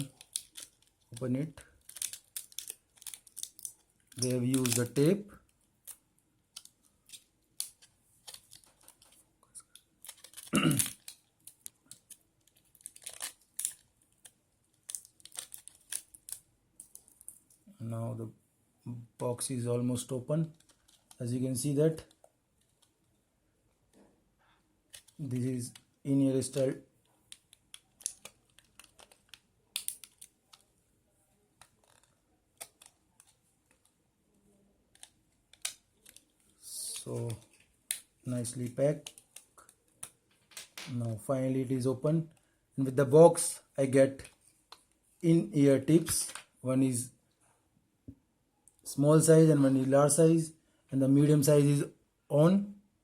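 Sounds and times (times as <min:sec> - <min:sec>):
packaging clicks and crinkles: 0:00.0 - 0:17.6, 0:20.4 - 0:21.2, 0:24.9 - 0:30.8, 0:31.4 - 0:34.0, 0:34.8 - 0:40.8.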